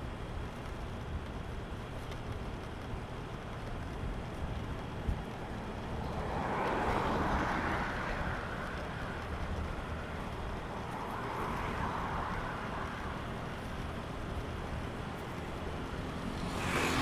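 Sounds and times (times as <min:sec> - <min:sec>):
low rumble of traffic: 0:00.0 - 0:17.0
vehicles passing by: 0:03.3 - 0:17.0.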